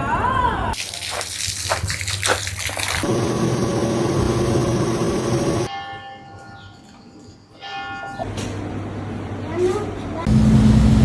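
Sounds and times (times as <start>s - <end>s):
rushing water: 0.8s - 3.2s
water splashes: 0.8s - 3.2s.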